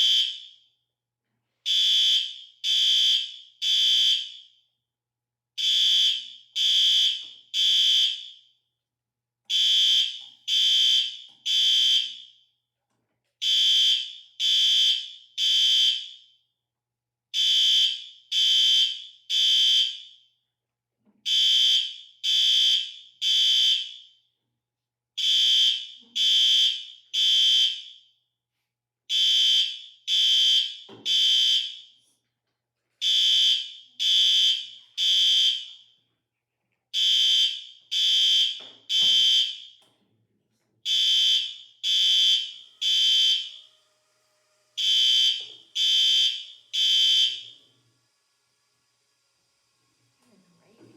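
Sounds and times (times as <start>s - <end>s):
fire alarm beeping: 0.0s - 0.8s, 1.7s - 4.7s, 5.6s - 8.6s, 9.5s - 12.6s, 13.4s - 16.5s, 17.4s - 20.4s, 21.3s - 24.3s, 25.2s - 28.2s, 29.1s - 32.0s, 33.0s - 36.0s, 37.0s - 39.9s, 40.9s - 48.7s.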